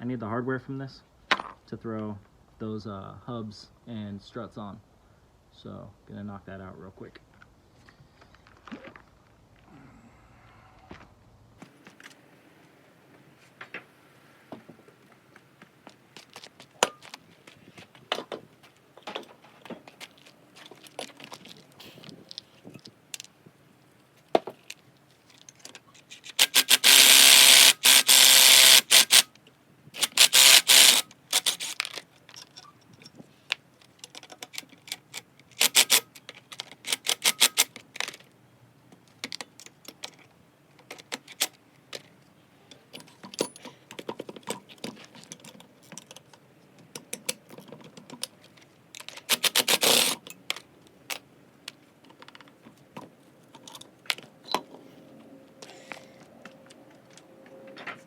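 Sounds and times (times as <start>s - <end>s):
power tool rattling: 26.2s - 29.3s, 30.0s - 32.0s, 35.5s - 36.0s, 49.1s - 50.2s
metal tools clinking and scraping: 42.0s - 46.3s.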